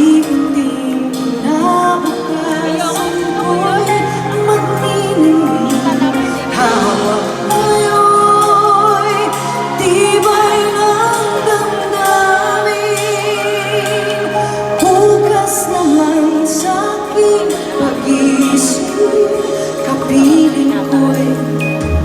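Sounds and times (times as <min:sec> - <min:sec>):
instrumental accompaniment: 0:00.0 - 0:22.0
women singing pop song: 0:00.0 - 0:22.0.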